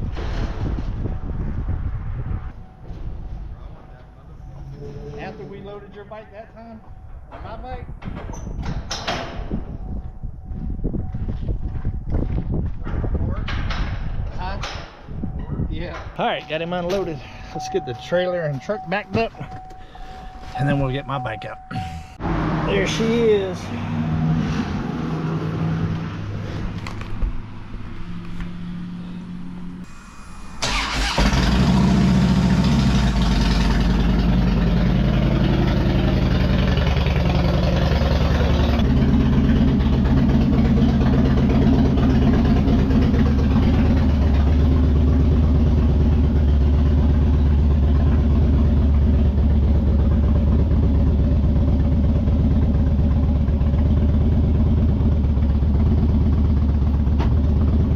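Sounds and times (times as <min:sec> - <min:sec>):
vehicle engine starting and idling: 0:26.4 - 0:57.9.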